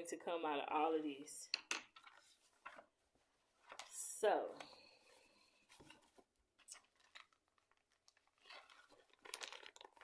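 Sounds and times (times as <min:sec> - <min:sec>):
faint clicks and rustles: 0:04.6 - 0:10.0.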